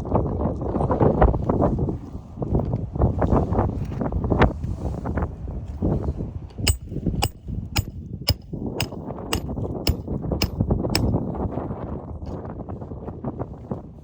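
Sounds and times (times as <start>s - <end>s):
hammer striking metal: 6.7s - 11.1s.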